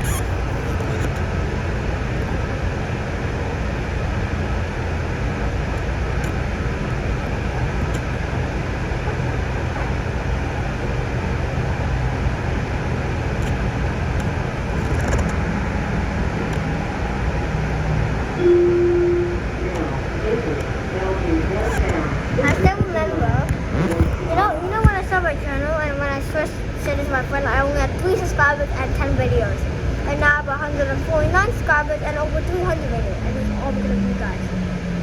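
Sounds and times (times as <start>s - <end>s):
low motor hum: 0.0s - 28.0s, 29.2s - 35.0s
light rail train rumble: 0.0s - 35.0s
steady tone: 18.2s - 20.9s.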